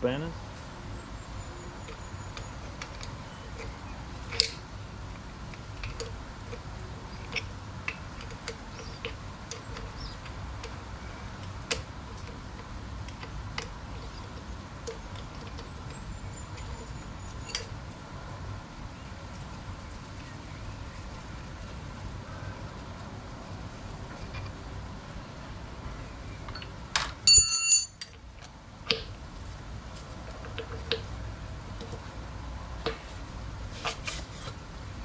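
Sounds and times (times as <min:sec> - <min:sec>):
low background noise: 0:00.0 - 0:35.0
spanners clicking on metal: 0:05.5 - 0:10.8.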